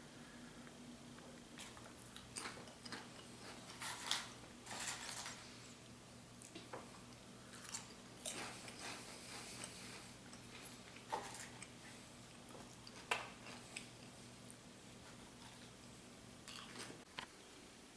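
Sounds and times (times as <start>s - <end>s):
low steady hum: 0.0s - 17.9s
rustling and crunching handling noises: 1.6s - 5.8s.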